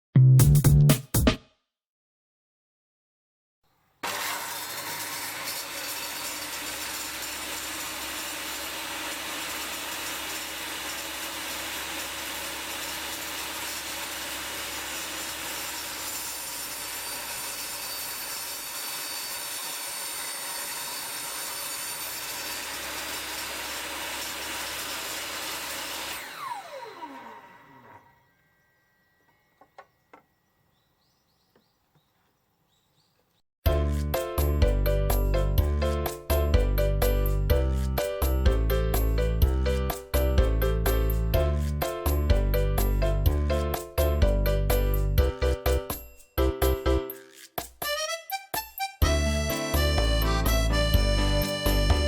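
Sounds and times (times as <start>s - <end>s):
table saw cutting wood: 4.0s - 28.3s, 49.0s - 52.0s
saw blade spinning down: 4.0s - 28.6s.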